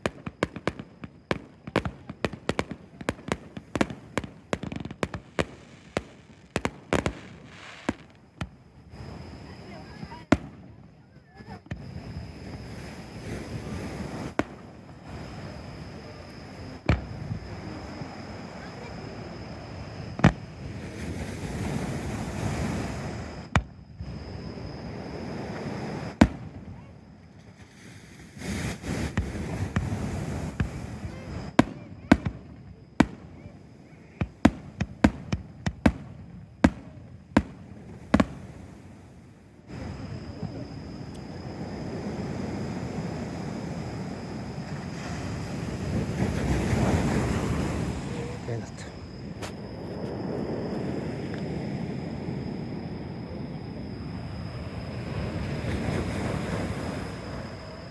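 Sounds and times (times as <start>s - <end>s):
fireworks bangs: 0.0s - 24.2s, 24.8s - 39.0s
fireworks crackling: 0.0s - 51.6s.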